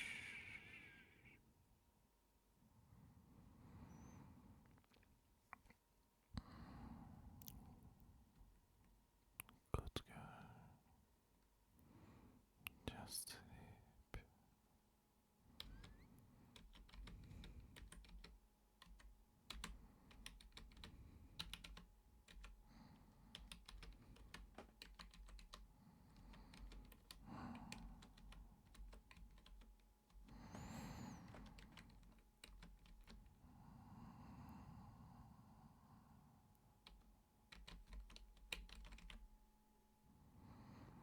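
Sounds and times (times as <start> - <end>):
soft breathy sounds: 0.0 - 1.5, 2.6 - 8.4, 9.4 - 11.1, 11.7 - 14.6, 19.6 - 37.0, 40.1 - 41.0
keyboard typing: 15.6 - 22.6, 23.3 - 33.3, 36.8 - 39.4.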